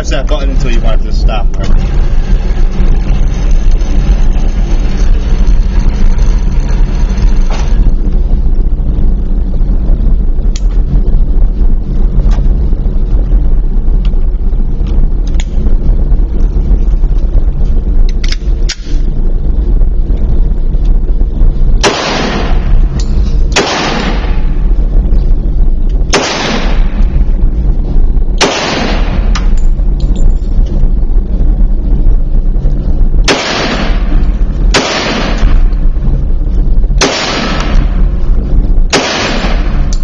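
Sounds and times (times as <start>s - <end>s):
loud low rumble: 0.0s - 40.0s
pistol shots: 21.8s - 22.7s, 23.5s - 24.4s, 26.1s - 27.0s, 28.4s - 29.4s, 33.3s - 34.1s, 34.7s - 35.6s, 37.0s - 37.9s, 38.9s - 39.8s.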